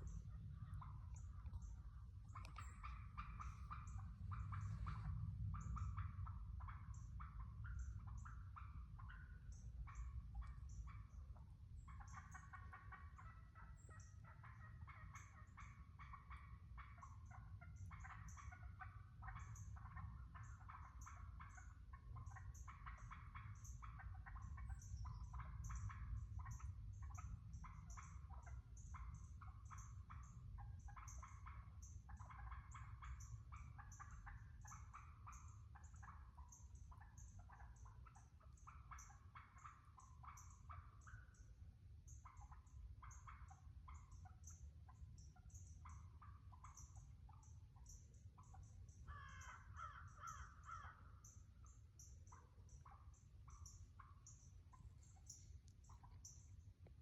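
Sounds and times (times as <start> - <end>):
steady low rumble: 0.0 - 8.2
wild turkeys calling: 0.0 - 57.0.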